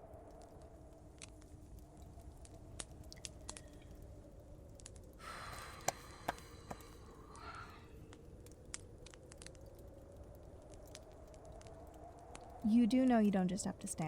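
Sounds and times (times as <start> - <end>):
fireplace fire crackling: 0.0 - 14.0.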